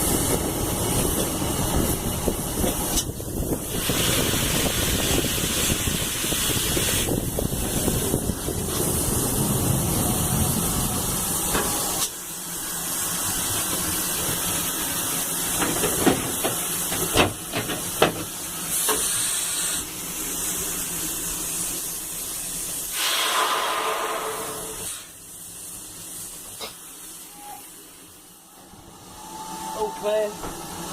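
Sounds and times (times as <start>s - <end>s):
low rumble: 0.0s - 13.6s
steam hissing from locomotive: 0.0s - 30.9s.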